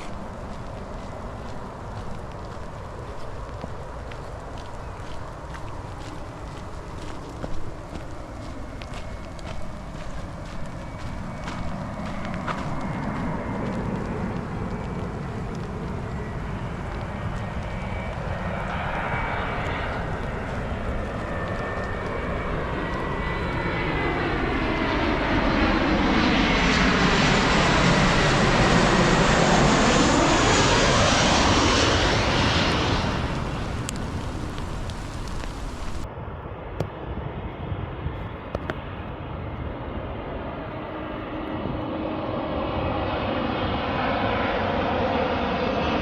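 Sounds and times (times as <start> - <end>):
airliner flying overhead: 0.0 - 46.0
jet engine whine: 0.0 - 46.0.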